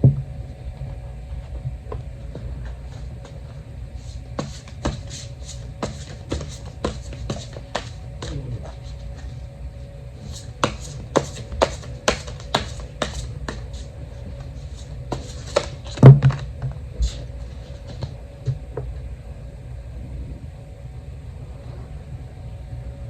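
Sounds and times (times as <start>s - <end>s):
cards tapping and clicking: 10.6s - 13.8s.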